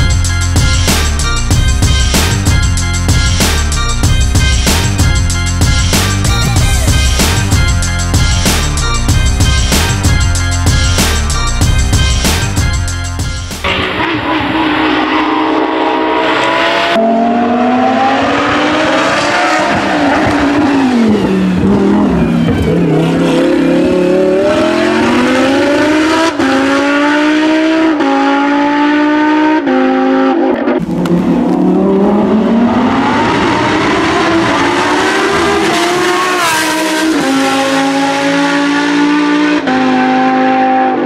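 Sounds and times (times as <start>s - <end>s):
race car engine at full throttle: 13.6s - 41.0s.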